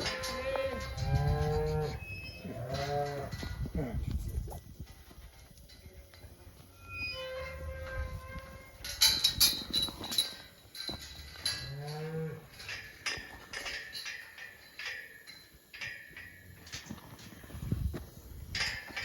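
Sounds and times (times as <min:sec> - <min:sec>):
calves mooing: 0:00.0 - 0:03.4
knocks and clattering: 0:08.8 - 0:17.3, 0:18.5 - 0:19.0.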